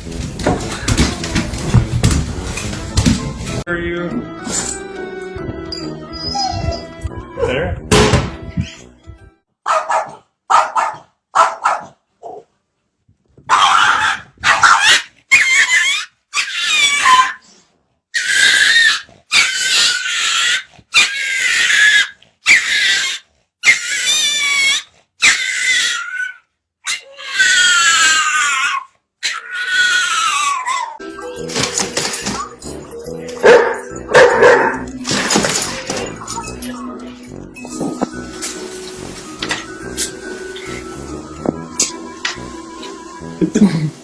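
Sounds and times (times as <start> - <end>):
dog whining: 5.9 - 7.2, 18.2 - 31.0
dog yelping: 6.1 - 7.0, 13.5 - 17.4, 18.2 - 31.0, 33.4 - 34.8.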